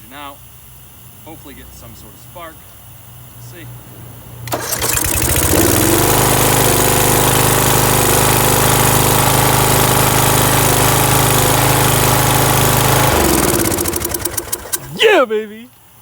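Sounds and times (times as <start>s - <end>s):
mower engine cranking and running: 4.4s - 15.0s.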